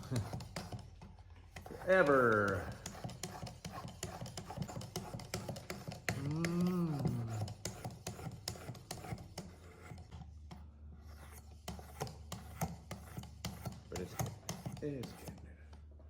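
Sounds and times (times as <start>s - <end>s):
knife sharpener scraping strokes: 0.0s - 0.8s, 1.5s - 10.0s, 11.1s - 15.4s.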